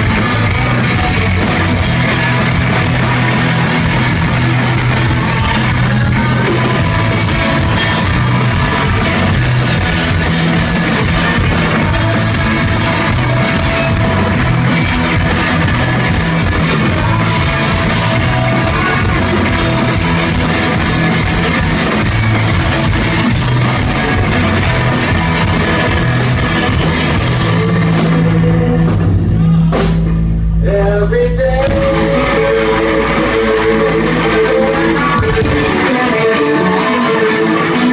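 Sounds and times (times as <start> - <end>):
guitar picking rising phrase: 0.0 - 29.9, 31.7 - 37.9
live rock band playing: 0.0 - 37.9.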